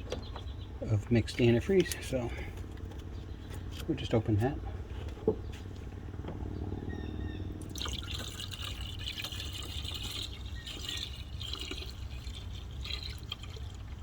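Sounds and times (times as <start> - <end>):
liquid gurgling pouring from a jug: 7.6 - 14.0.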